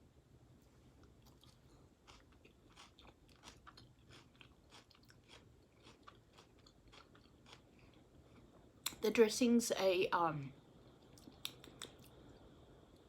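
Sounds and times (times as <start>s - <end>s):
chewing crunchy salad: 1.0s - 9.0s, 11.0s - 12.5s.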